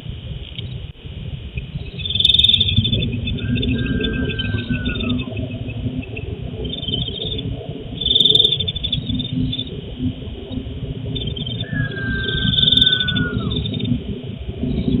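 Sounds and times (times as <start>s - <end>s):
crickets chirping: 0.0s - 15.0s
low background rumble: 0.0s - 15.0s.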